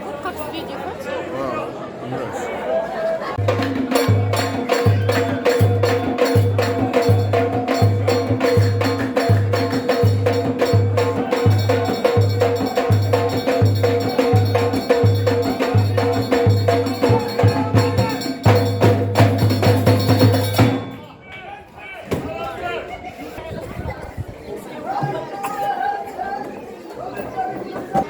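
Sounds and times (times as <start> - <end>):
sharp percussive strikes: 3.4 - 21.1.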